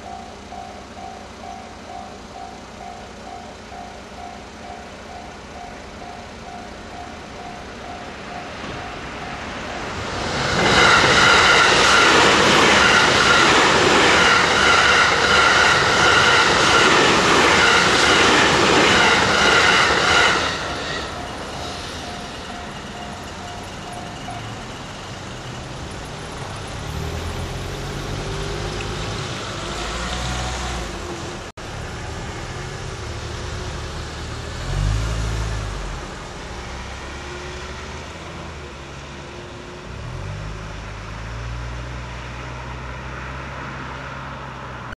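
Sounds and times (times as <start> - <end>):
level crossing warning bell: 0.0 - 10.1, 11.1 - 27.0
traffic noise: 0.0 - 45.0
vehicles driving over crossing: 0.0 - 45.0.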